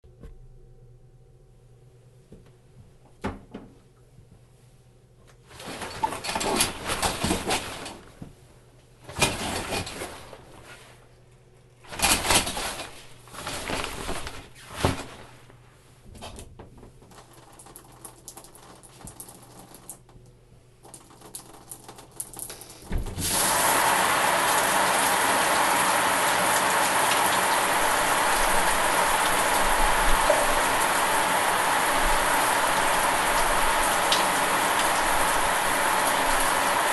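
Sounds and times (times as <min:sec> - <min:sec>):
shower curtain rustling on rod: 0:05.5 - 0:08.2, 0:09.1 - 0:11.1, 0:11.8 - 0:16.0
shower water spraying: 0:20.8 - 0:36.9.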